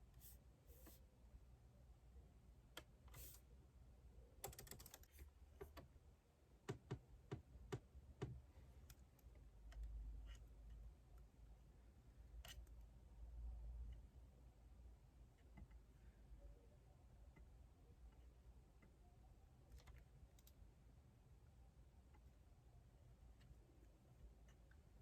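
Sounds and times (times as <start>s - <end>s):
typing on computer keyboard: 4.4s - 5.9s.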